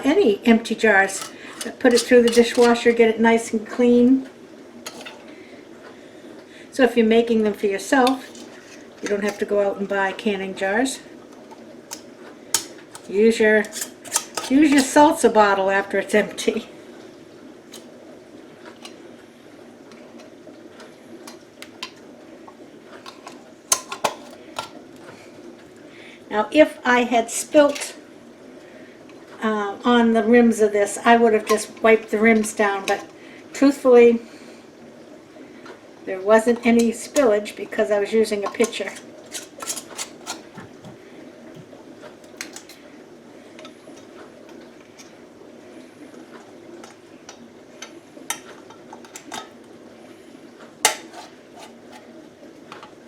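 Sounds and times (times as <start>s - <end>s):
metal lids clinking on glass jars: 1.0s - 2.9s, 4.9s - 5.2s, 8.0s - 9.5s, 12.6s - 15.1s, 23.0s - 24.8s, 27.6s - 28.0s, 31.4s - 31.8s, 38.3s - 40.6s, 47.8s - 49.6s, 50.8s - 52.0s.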